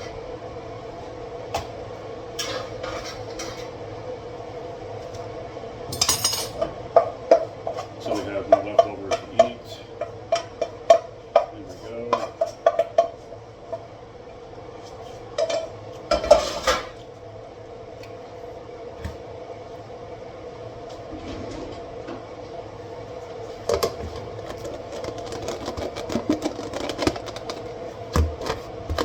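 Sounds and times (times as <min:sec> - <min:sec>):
dishes and cutlery clattering: 0:06.0 - 0:06.7.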